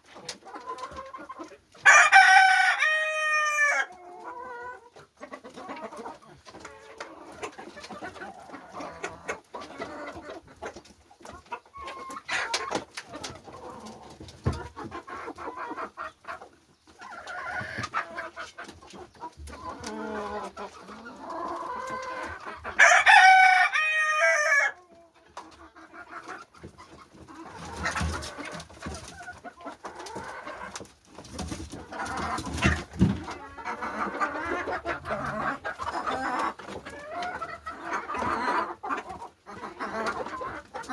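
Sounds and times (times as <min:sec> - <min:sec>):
chickens clucking: 0:00.0 - 0:40.9
rooster crowing: 0:01.8 - 0:03.9, 0:22.8 - 0:24.7.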